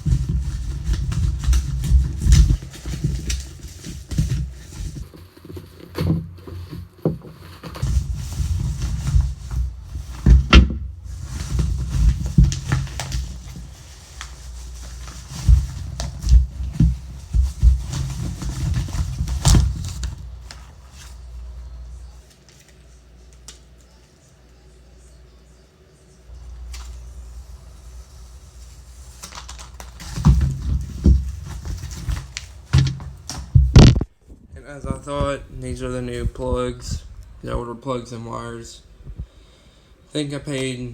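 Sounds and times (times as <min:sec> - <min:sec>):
knocks and thumps of packaging: 0:00.0 - 0:21.1, 0:29.1 - 0:34.1
packaging rustling: 0:00.0 - 0:24.0, 0:26.3 - 0:34.2.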